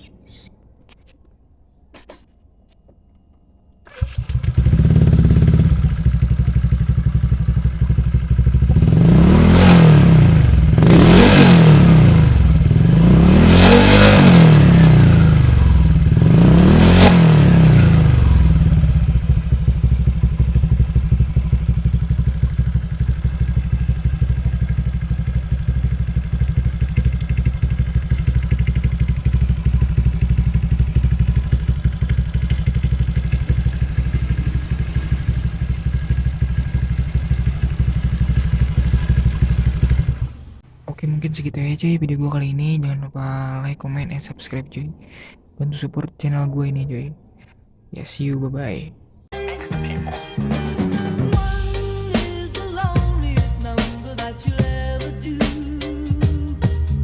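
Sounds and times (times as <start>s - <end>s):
scooter engine idling and revving: 3.9s - 40.8s, 51.3s - 57.0s.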